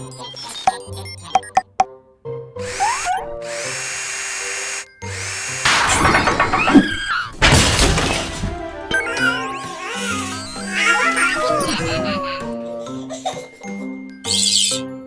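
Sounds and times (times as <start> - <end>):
cartoon background music: 0.0 - 15.0
clattering and whirring sound effects: 2.6 - 12.2.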